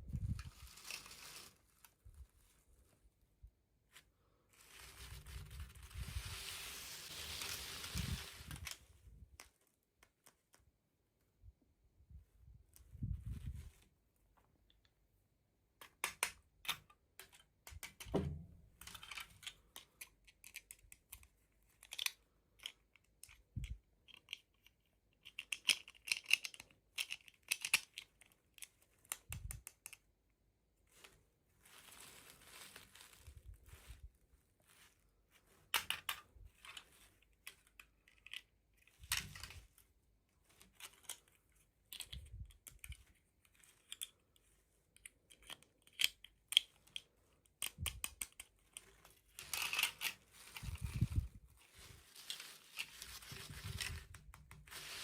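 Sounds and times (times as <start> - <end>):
packaging crinkling and tearing: 0.3 - 2.6, 4.5 - 8.9, 30.9 - 35.9, 48.7 - 55.0
plastic clicks: 15.8 - 30.1, 40.5 - 51.2.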